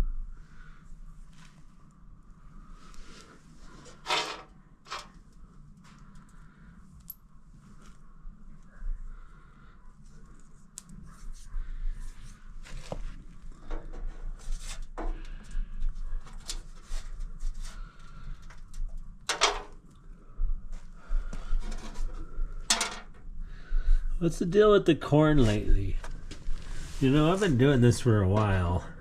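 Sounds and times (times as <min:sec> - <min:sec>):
sheet metal clicks and scrapes: 0:03.9 - 0:05.2.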